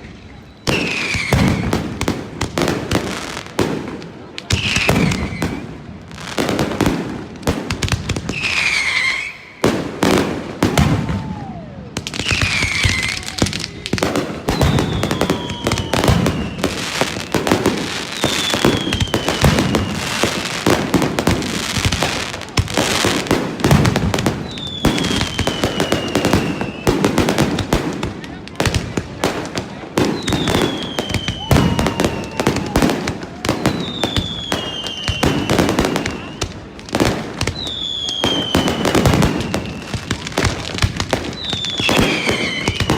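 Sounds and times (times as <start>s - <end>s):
fireworks bangs and crackling: 0.0s - 42.9s
fireworks whistles sliding down: 0.1s - 1.8s, 4.5s - 5.6s, 8.3s - 9.7s, 10.8s - 13.8s, 14.4s - 20.5s, 24.4s - 27.0s, 30.1s - 36.6s, 37.4s - 40.3s, 41.2s - 42.9s.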